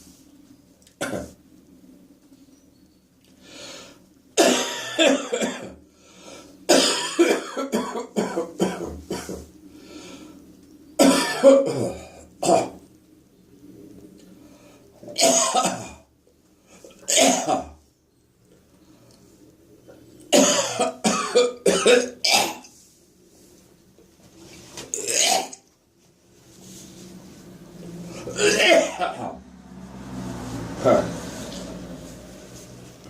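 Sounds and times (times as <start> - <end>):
person clearing throat: 1.0 - 1.4, 11.0 - 12.8, 25.0 - 25.6, 28.2 - 29.4
person coughing with phlegm: 1.0 - 1.4, 4.4 - 5.8, 6.7 - 9.4, 11.0 - 12.8, 15.2 - 16.0, 17.0 - 17.8, 20.3 - 22.7, 25.0 - 25.6, 28.3 - 29.4.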